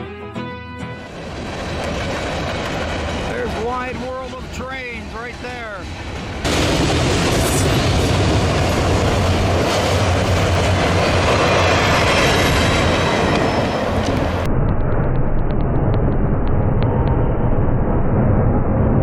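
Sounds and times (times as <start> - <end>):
train passing on track: 0.0 - 14.6.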